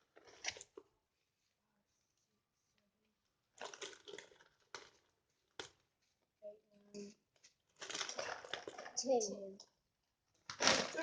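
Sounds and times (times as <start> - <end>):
crunchy snacks being chewed: 3.6 - 5.8, 7.7 - 9.0.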